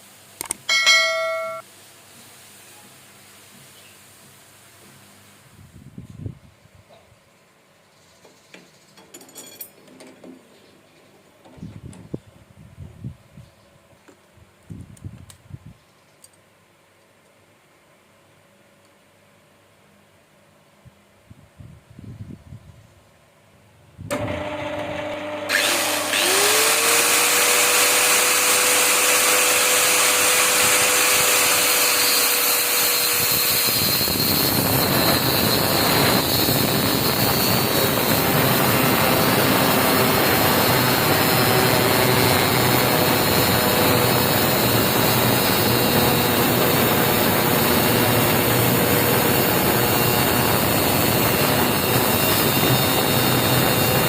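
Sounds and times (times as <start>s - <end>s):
electric motor whine: 24.1s - 54.0s
rough grinding noise: 24.2s - 54.0s.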